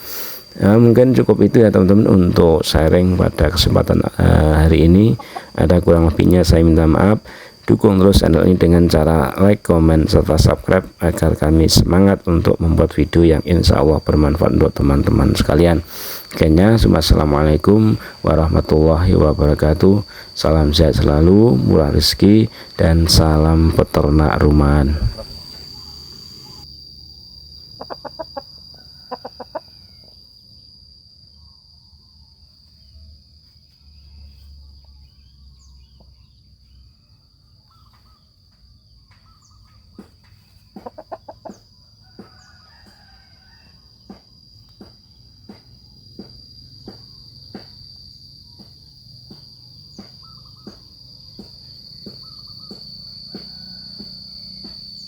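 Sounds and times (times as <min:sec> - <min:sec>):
high-pitched insect trill: 0:00.0 - 0:55.0
chicken clucking: 0:05.0 - 0:05.6, 0:27.8 - 0:28.5, 0:29.1 - 0:29.7, 0:40.8 - 0:41.6.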